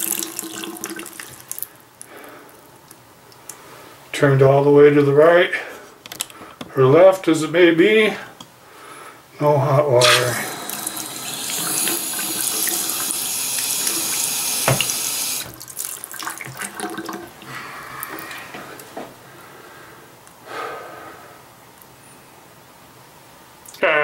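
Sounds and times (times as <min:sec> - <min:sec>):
faucet running: 0:00.0 - 0:01.5, 0:10.0 - 0:17.4.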